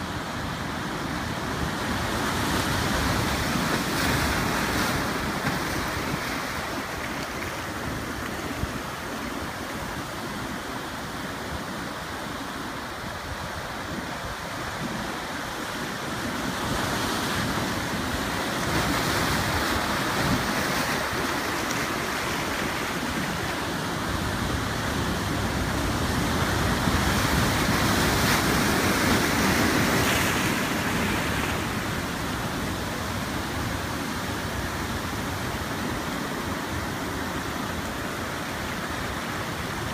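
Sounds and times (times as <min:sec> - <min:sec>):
surf breaking on rocks: 0:16.6 - 0:23.6.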